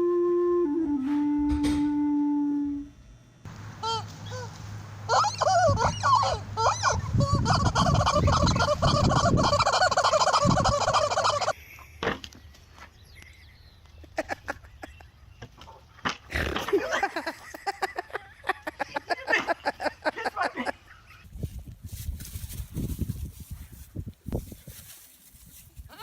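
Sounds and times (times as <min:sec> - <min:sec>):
held flute-like note: 0:00.0 - 0:11.5
turkeys gobbling: 0:03.8 - 0:11.6.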